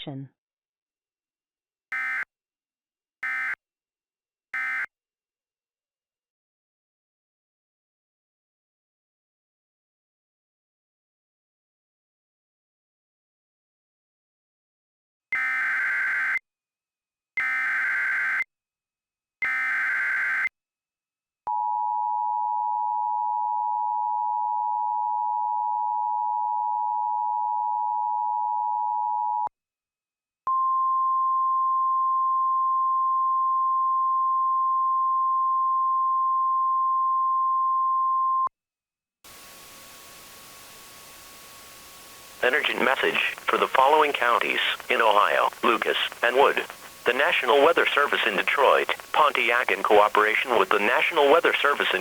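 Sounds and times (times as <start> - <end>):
buzzy digital header bursts: 39.3 - 52.0
faint radio static hiss: 39.3 - 52.0.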